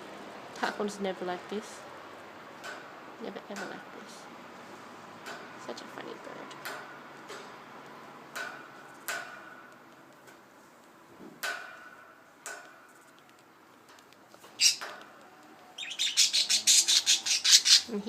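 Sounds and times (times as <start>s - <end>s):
beak clicking on cage wire: 11.4s - 16.2s
budgie squawking: 14.6s - 14.9s, 15.8s - 17.9s.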